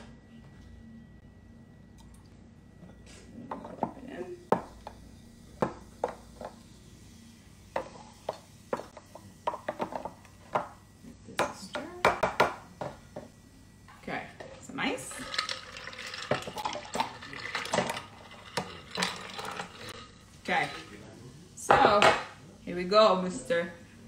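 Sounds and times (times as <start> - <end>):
utensils clinking against dishes: 14.4 - 21.0.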